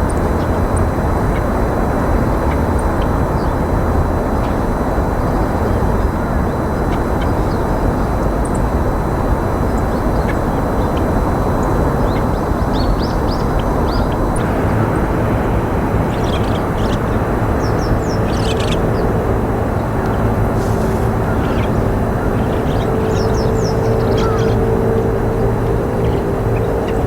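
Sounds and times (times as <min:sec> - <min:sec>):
low outdoor rumble: 0:00.0 - 0:27.0
bird chirps: 0:12.8 - 0:25.4.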